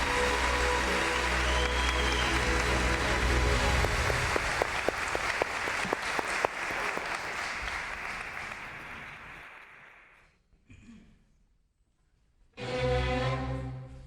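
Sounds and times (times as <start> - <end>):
musical chord: 0.0 - 4.8
audience applause: 0.0 - 10.2.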